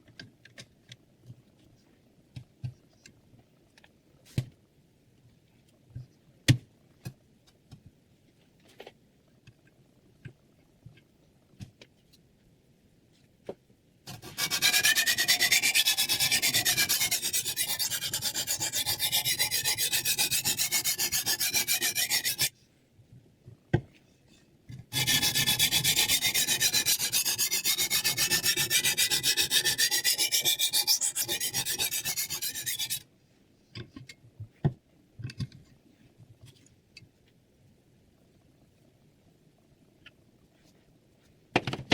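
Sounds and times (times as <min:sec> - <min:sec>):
knife rubbing on sharpening stone: 0:14.1 - 0:22.5, 0:25.0 - 0:33.0.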